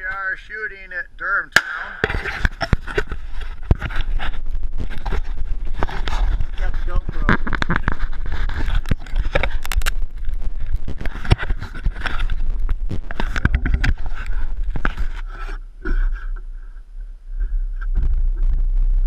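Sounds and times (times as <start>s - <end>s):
steady low rumble: 0.0s - 19.0s
camera handling scraping and knocks: 2.0s - 10.0s, 11.0s - 12.4s, 13.1s - 16.4s.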